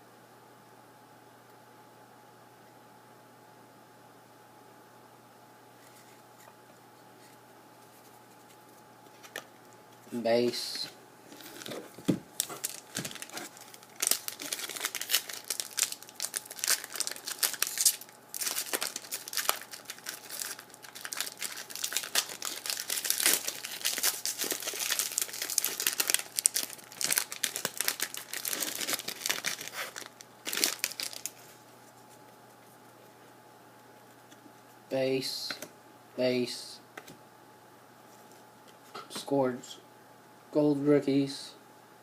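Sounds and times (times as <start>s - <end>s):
foil wrapper crinkling: 11.3s - 32.1s.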